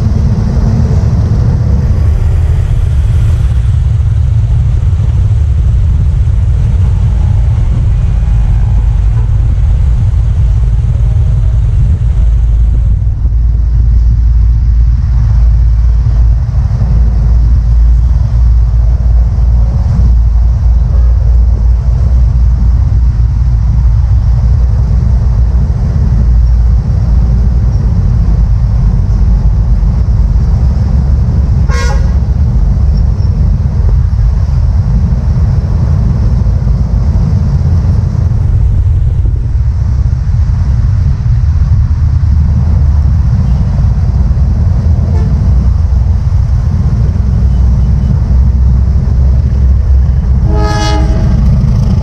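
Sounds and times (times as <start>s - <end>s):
heavy low rumble of vehicles: 0.0s - 52.0s
horn toot: 31.6s - 32.4s, 45.1s - 45.6s, 50.4s - 52.0s.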